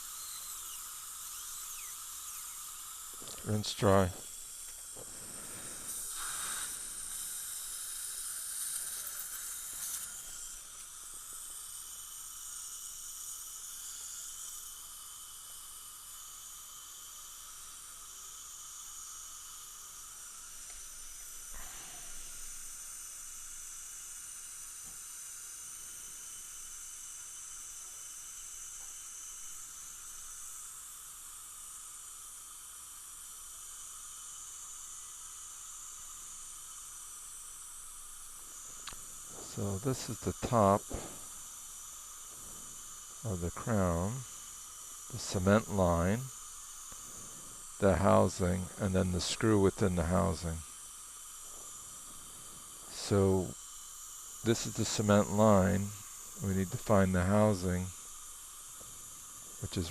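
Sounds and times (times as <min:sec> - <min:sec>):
dental suction hiss: 0:00.0 - 0:59.9
faint high dental whines: 0:00.0 - 0:59.9.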